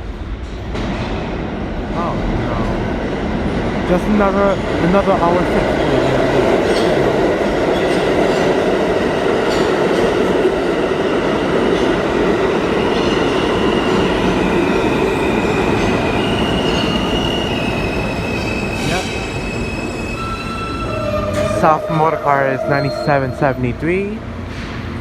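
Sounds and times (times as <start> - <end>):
subway train rumble: 0.0 - 25.0
high squealing tones: 15.0 - 24.2.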